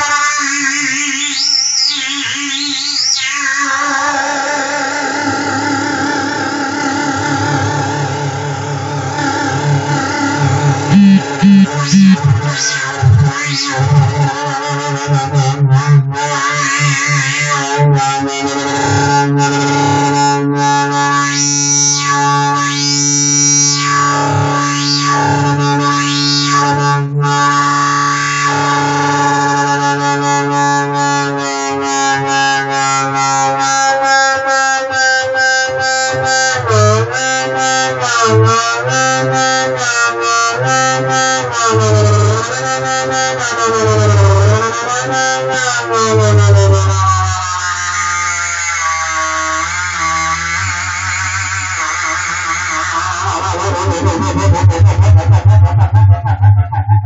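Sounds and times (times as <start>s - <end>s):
buzzy synthesizer drone: 9.7s - 14.3s.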